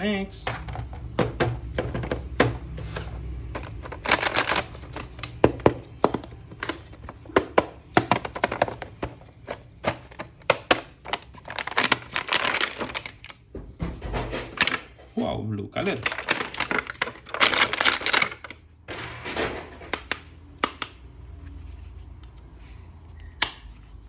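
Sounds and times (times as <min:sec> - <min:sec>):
plastic packaging crinkling: 0:03.0 - 0:07.3, 0:08.0 - 0:13.5, 0:15.8 - 0:18.6.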